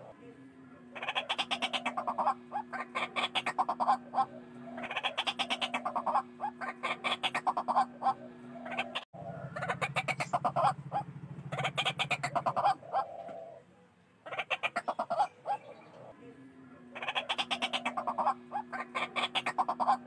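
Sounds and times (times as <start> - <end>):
waterhen harsh calls: 0.9 - 13.6, 14.2 - 16.1, 16.9 - 20.0
low hum: 3.8 - 13.0.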